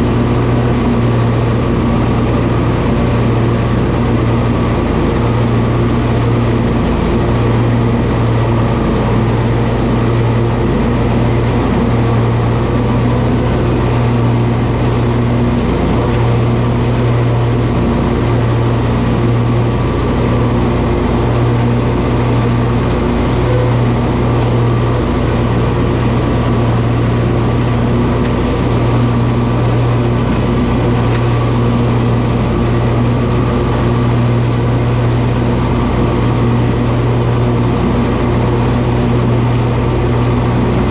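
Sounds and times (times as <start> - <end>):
lawn mower engine running: 0.0 - 40.9.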